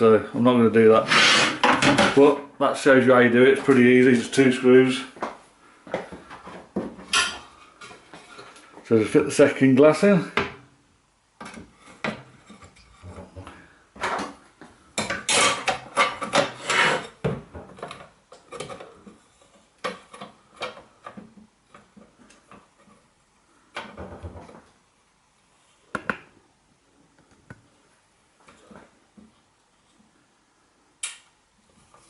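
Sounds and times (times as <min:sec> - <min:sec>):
knocks and taps: 0:25.9 - 0:26.3.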